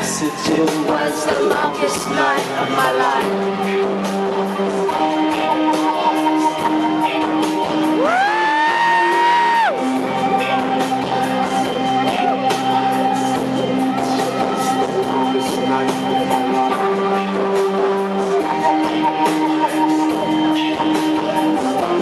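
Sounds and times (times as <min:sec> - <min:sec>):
live rock band playing: 0:00.0 - 0:22.0
loud whoop gliding up: 0:07.9 - 0:09.8.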